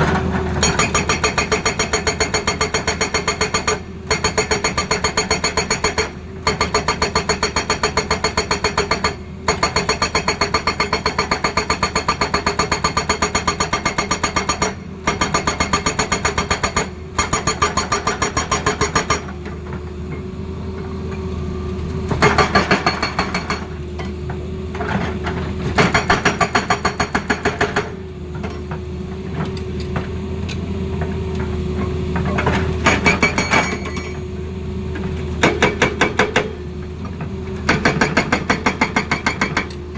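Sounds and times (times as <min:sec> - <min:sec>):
hydraulic breaker hammering: 0:22.1 - 0:23.7, 0:25.7 - 0:28.0, 0:32.8 - 0:34.3, 0:35.4 - 0:36.6, 0:37.6 - 0:39.9.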